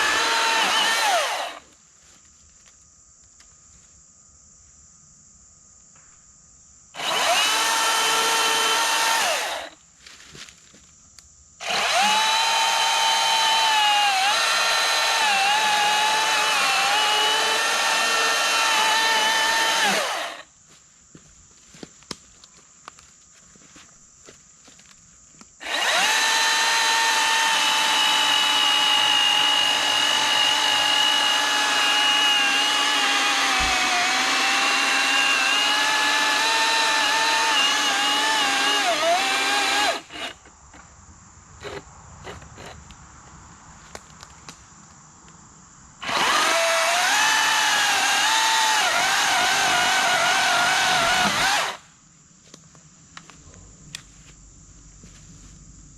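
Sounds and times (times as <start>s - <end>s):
battery chainsaw cutting wood: 0.0s - 1.6s, 7.0s - 9.8s, 11.6s - 20.4s, 25.6s - 40.4s, 46.0s - 51.8s.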